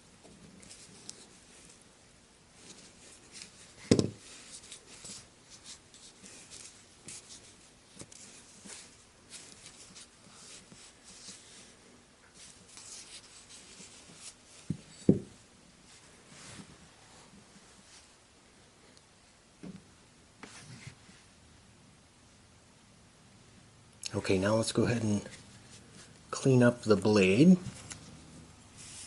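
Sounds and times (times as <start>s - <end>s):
rubbing and scratching knife parts: 2.6s - 11.7s.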